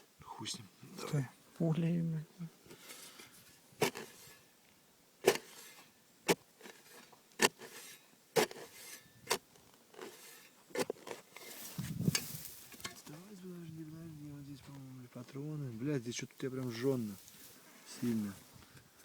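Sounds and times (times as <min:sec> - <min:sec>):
scraping rustle: 0:02.7 - 0:04.5, 0:05.2 - 0:13.4.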